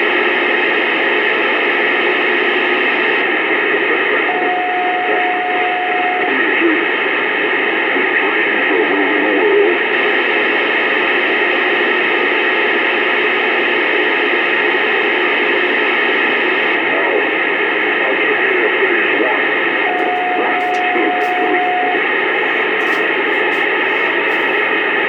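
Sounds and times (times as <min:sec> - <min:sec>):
faint indistinct murmuring: 0:19.9 - 0:25.0.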